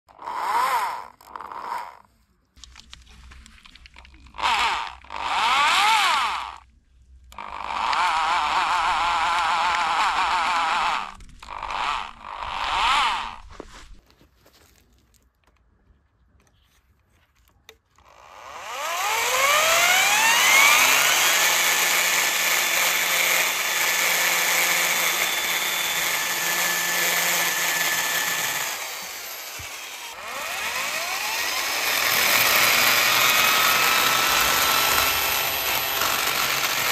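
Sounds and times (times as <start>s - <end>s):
electric drill chain whining: 0.1s - 2.1s, 4.4s - 6.6s, 7.3s - 13.4s, 18.0s - 36.9s.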